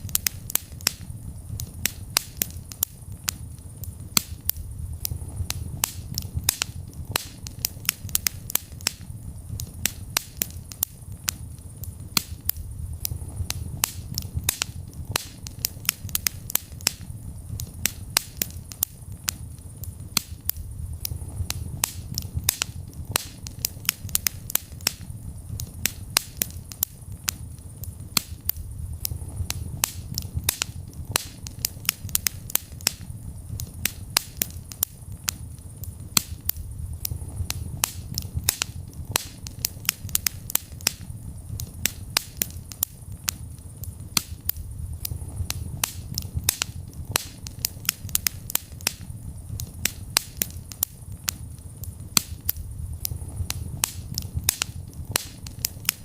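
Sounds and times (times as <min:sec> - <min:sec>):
wood fire crackling: 0:00.0 - 0:56.0.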